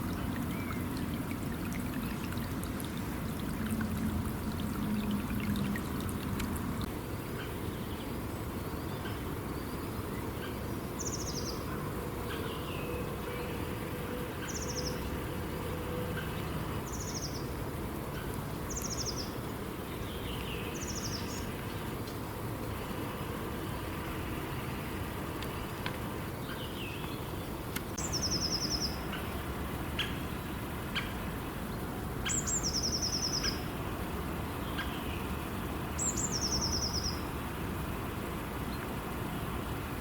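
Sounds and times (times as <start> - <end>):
river water rushing: 0.0 - 6.9.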